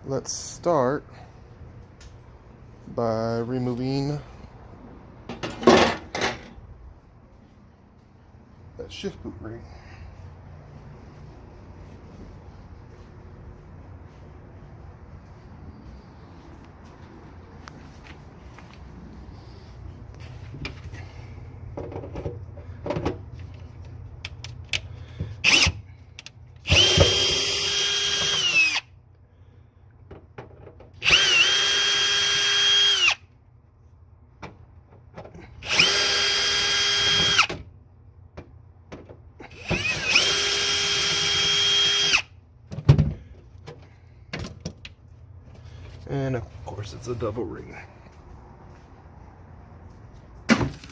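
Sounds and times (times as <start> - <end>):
power drill running: 25.4 - 25.8, 26.6 - 28.9, 31.0 - 33.2, 35.6 - 37.5, 39.5 - 42.3.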